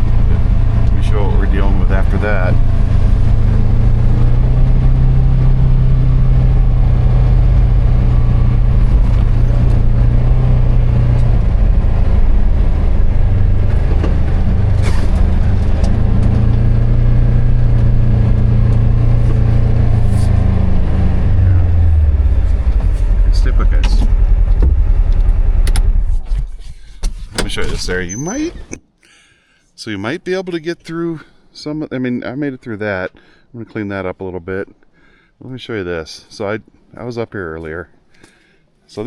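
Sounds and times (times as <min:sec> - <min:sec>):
utility vehicle engine running: 0:00.0 - 0:26.5.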